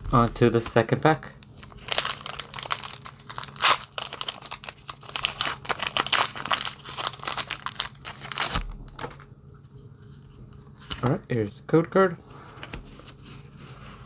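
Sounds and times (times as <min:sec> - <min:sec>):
foil wrapper tearing and crinkling: 0:00.1 - 0:09.2.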